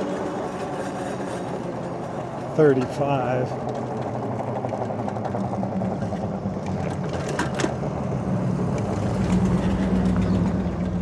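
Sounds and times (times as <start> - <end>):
electric bike motor hum: 0.0 - 6.8
tyre and road noise: 0.0 - 11.0.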